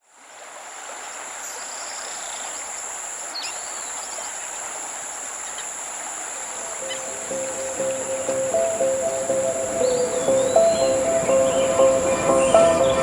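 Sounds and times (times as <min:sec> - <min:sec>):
background hiss: 0:00.1 - 0:13.0
bird call: 0:06.6 - 0:13.0.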